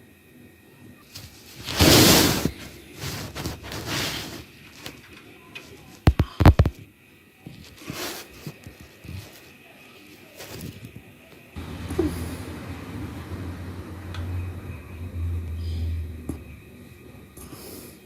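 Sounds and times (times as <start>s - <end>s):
scraping and rustling handling: 1.1s - 6.0s, 7.5s - 13.0s.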